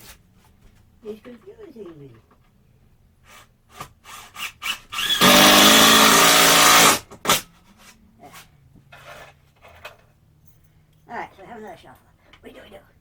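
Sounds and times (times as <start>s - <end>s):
power drill running: 4.0s - 7.0s.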